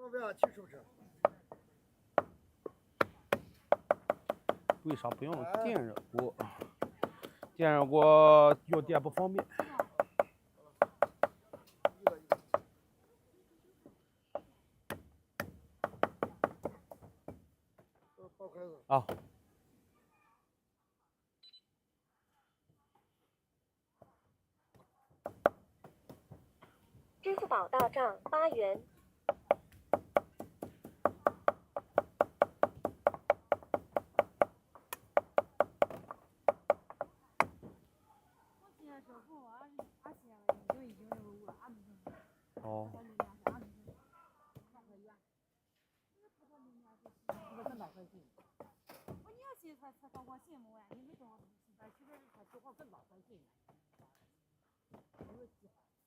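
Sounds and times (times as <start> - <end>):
knocks on wooden board: 2.2 - 8.1, 29.3 - 37.8.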